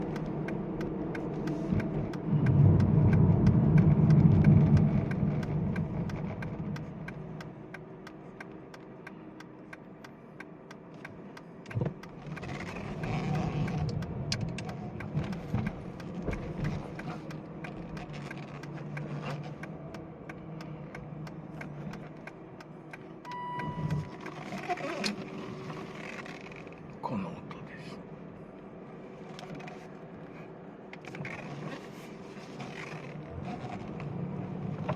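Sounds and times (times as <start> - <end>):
faint steady ticking: 0.0 - 25.2
low-pitched steering noise: 0.0 - 34.9.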